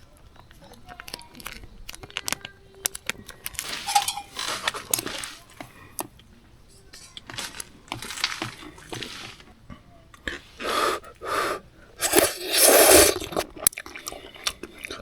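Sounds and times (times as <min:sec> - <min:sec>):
tableware clicks: 0:03.4 - 0:05.8.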